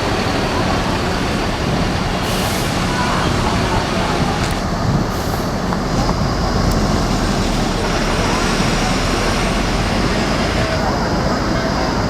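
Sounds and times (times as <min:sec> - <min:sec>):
diesel bus engines rumbling: 0:00.0 - 0:12.0
traffic noise: 0:00.0 - 0:12.0.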